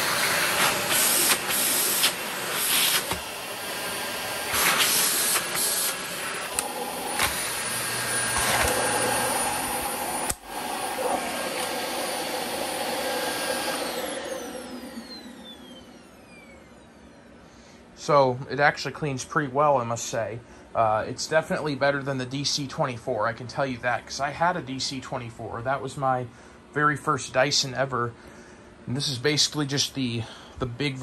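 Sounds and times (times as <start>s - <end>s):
vacuum motor winding down: 0.0s - 17.4s
vacuum cleaner running: 0.0s - 17.7s.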